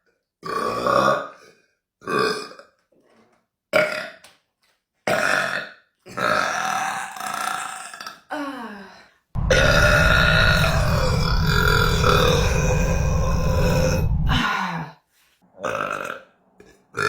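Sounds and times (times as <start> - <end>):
woman burping loudly: 6.2 - 8.5.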